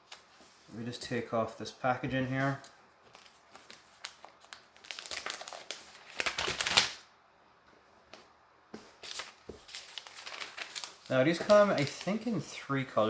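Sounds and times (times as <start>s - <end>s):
packaging crinkling and rustling: 3.0s - 7.0s, 9.0s - 12.4s.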